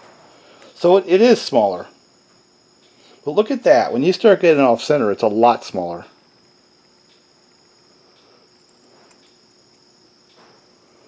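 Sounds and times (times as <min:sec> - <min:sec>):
faint high-pitched whine: 0:00.0 - 0:11.0
faint ticks: 0:06.4 - 0:10.5.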